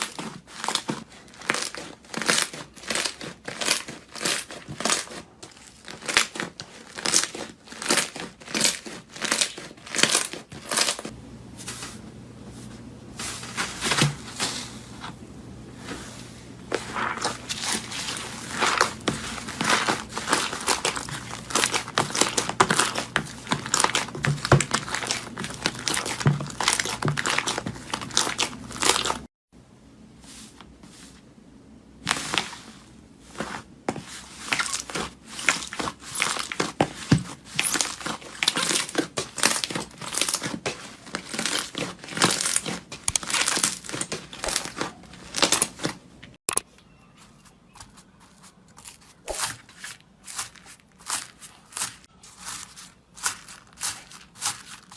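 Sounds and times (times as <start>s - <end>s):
slime crackling and popping: 0.0s - 11.1s, 18.5s - 29.2s, 37.6s - 45.8s.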